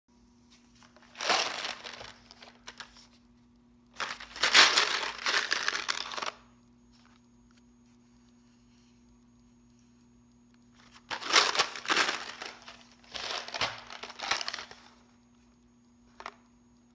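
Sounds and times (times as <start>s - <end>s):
candy package crinkling: 0.8s - 3.1s, 4.0s - 6.5s, 10.8s - 15.0s.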